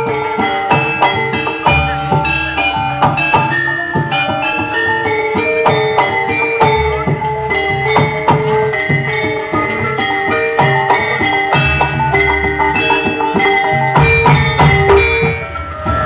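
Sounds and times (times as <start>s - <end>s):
drums: 0.0s - 16.0s
metallophone notes: 0.0s - 16.0s
heavy bass: 0.7s - 4.4s, 10.6s - 13.1s, 13.7s - 16.0s.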